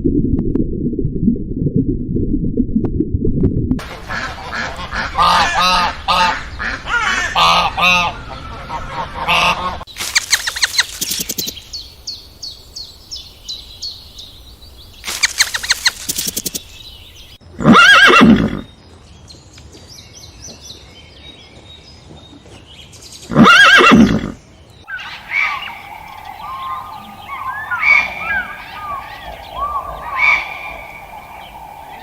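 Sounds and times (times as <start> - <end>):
high chirping call: 10.0 - 17.4, 24.8 - 32.0
horse neighing: 17.6 - 18.7, 23.3 - 31.5.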